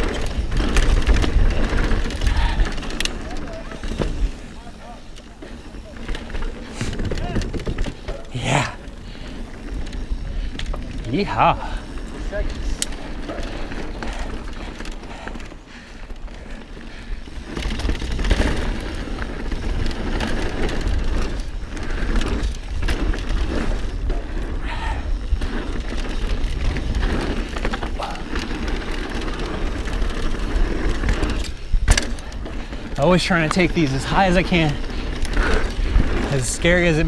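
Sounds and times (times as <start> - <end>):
wind buffeting microphone: 0.0 - 4.8
bike rattling: 0.0 - 37.0
bike tyres rolling over dirt: 0.0 - 37.0.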